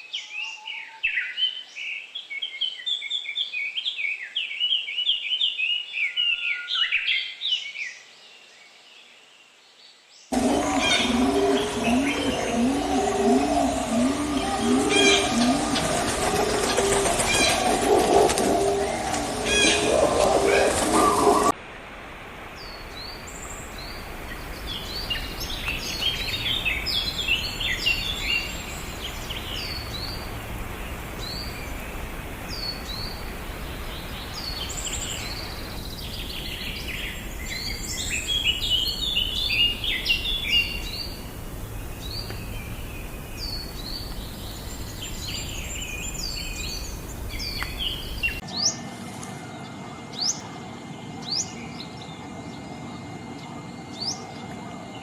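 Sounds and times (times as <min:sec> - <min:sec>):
birds chirping: 0:10.3 - 0:48.8
steady high tone: 0:10.4 - 0:17.9
low background rumble: 0:10.4 - 0:48.4.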